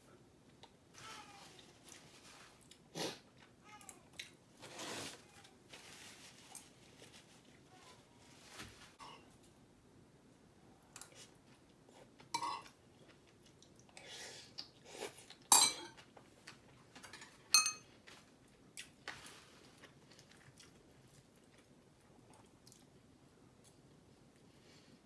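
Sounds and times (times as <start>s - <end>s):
utensils clinking against a bowl: 15.5s - 16.1s, 17.0s - 17.9s.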